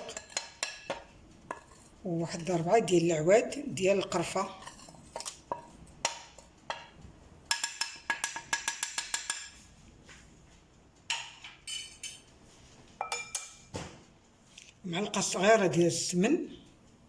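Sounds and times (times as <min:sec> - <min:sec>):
utensil clinking against bowl: 0:00.0 - 0:02.6, 0:11.1 - 0:12.3, 0:13.0 - 0:13.7.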